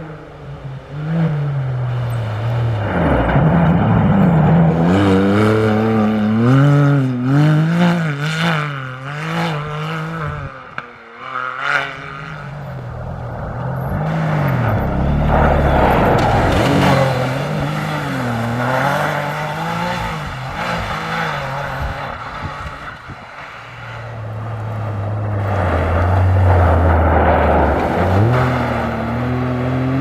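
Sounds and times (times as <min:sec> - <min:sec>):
vehicle engine revving hard: 0:02.7 - 0:10.6, 0:13.9 - 0:22.9.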